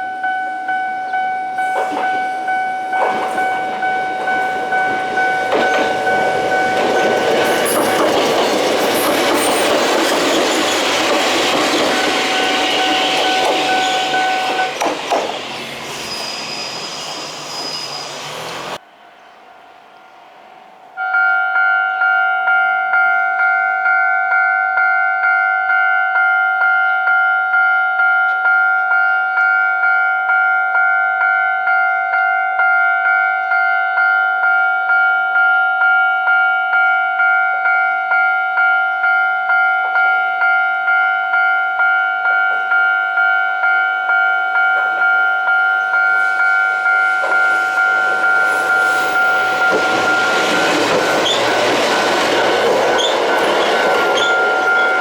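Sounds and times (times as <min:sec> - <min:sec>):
level crossing warning bell: 0:00.0 - 0:14.8, 0:21.0 - 0:55.0
approaching train: 0:00.0 - 0:24.9, 0:37.5 - 0:55.0.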